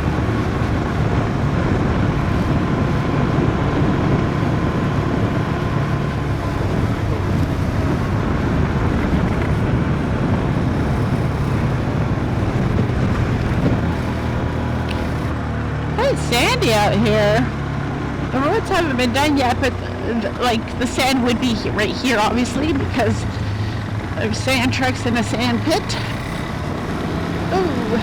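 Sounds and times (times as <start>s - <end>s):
wind rushing over microphone: 0.0s - 15.4s
motorcycle engine running: 0.0s - 28.0s.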